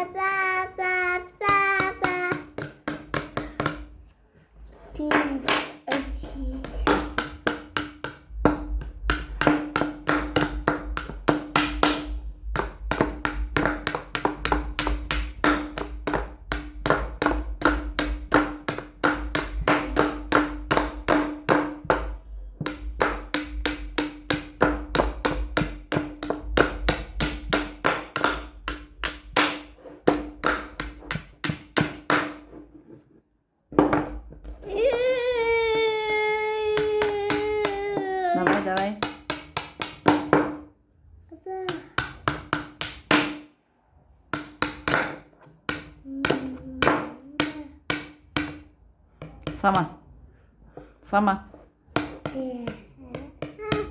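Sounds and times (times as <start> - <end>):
small hammer tapping: 0.0 - 3.9.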